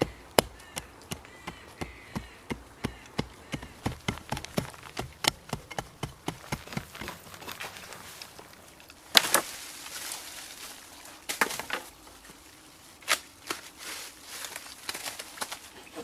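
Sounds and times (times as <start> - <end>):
hand tool knocking on wood: 0.0 - 7.2.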